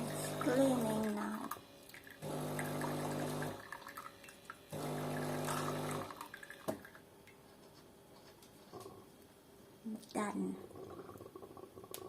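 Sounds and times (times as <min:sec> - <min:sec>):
water running through spout: 0:00.0 - 0:06.7
coffee machine pump humming: 0:00.0 - 0:07.1.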